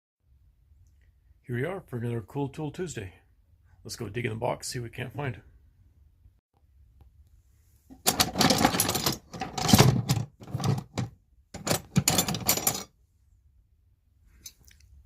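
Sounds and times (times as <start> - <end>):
tools clattering in box: 7.9 - 12.9.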